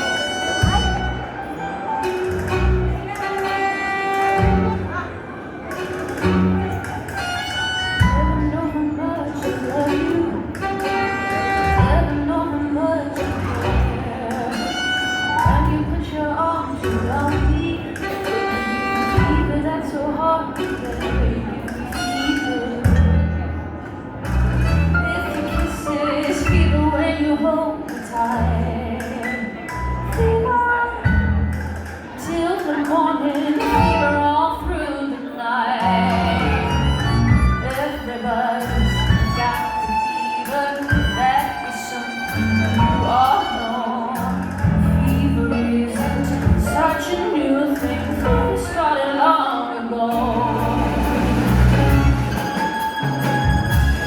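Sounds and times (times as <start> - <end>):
drums: 0.0 - 1.2, 2.0 - 4.9, 5.7 - 8.6, 9.4 - 12.4, 13.1 - 16.2, 16.8 - 19.6, 20.5 - 27.0, 27.8 - 34.8, 35.8 - 38.0, 38.6 - 48.8, 50.1 - 54.0
keyboard: 0.0 - 54.0
violin melody: 35.9 - 44.3, 50.3 - 54.0
steady drum beat: 51.0 - 54.0.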